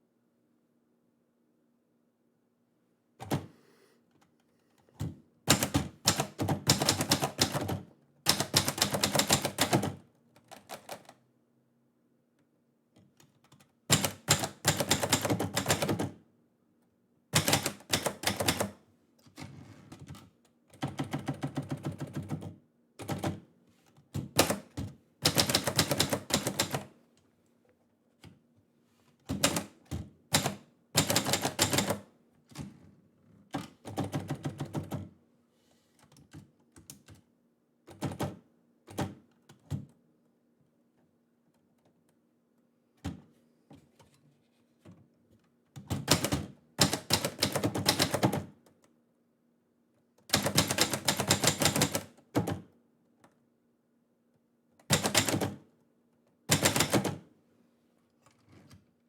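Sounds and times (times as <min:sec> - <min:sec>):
manual typewriter key strikes: 0:30.3 - 0:32.0, 0:50.3 - 0:52.6, 0:54.9 - 0:55.6, 0:56.5 - 0:57.2.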